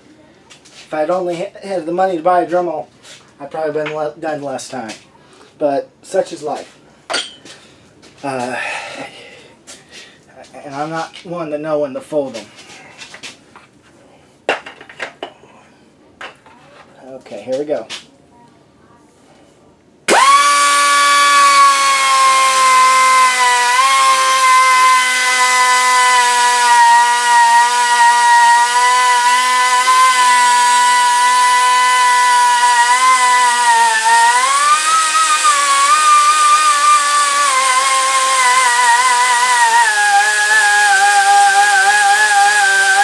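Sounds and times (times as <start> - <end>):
air die grinder high whine: 20.1 - 43.0.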